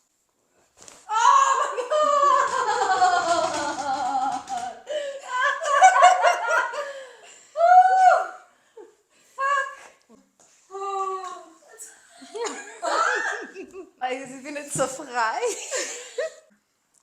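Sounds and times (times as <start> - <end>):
person crying out: 1.1 - 2.5
person laughing: 1.6 - 6.9.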